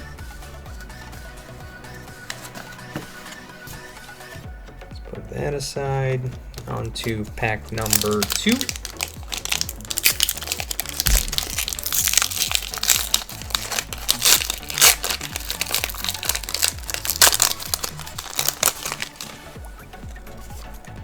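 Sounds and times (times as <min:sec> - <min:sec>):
background music: 0:00.0 - 0:21.0
foil wrapper crinkling: 0:07.0 - 0:20.6.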